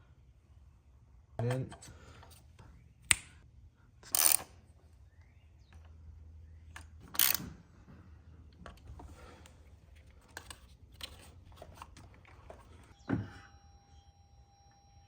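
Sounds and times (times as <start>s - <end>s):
torque wrench clicking: 4.0s - 4.5s, 7.1s - 7.4s.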